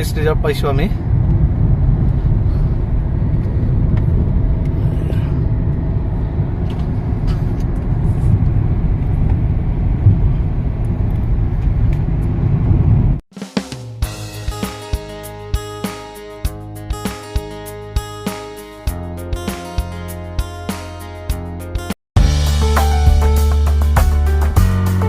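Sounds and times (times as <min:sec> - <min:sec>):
moving vehicle rumble: 0:00.0 - 0:13.2.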